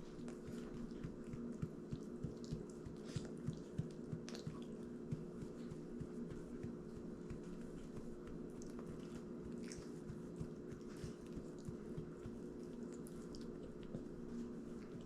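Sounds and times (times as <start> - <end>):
dog chewing and licking lips: 0.0 - 15.0
steady low hum: 0.0 - 15.0.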